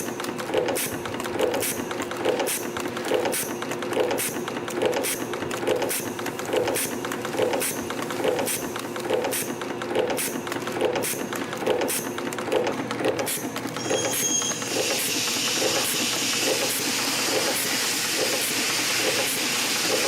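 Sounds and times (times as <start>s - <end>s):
spring-forming machine whirring: 0.0s - 20.0s
steady motor hum: 0.0s - 20.0s.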